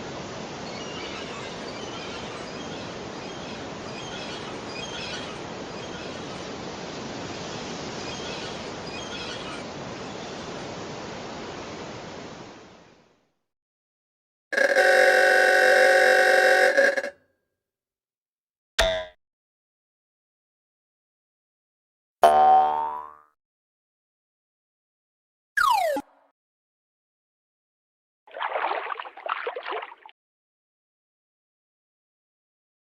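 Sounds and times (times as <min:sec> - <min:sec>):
loud steady pitched tone: 0:14.6 - 0:17.1.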